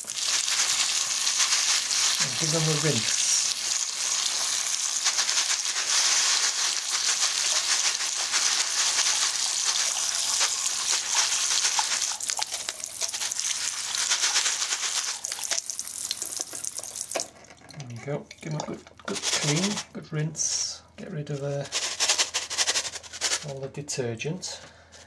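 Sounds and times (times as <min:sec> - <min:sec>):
pellets rattling in sieve: 0:00.0 - 0:17.3, 0:19.0 - 0:19.9, 0:21.5 - 0:23.6
tap water splashing: 0:15.3 - 0:17.3.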